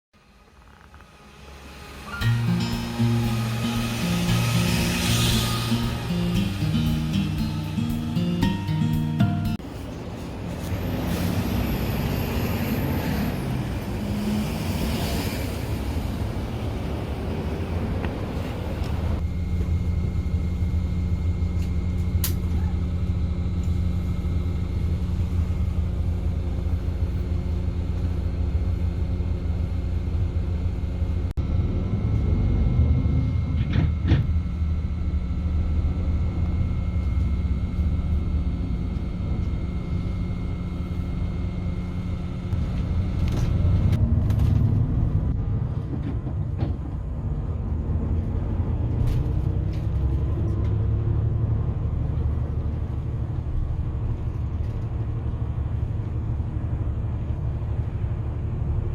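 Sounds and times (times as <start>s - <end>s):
low rumble of moving vehicle: 0.2s - 58.9s
faint high whine: 19.2s - 43.9s.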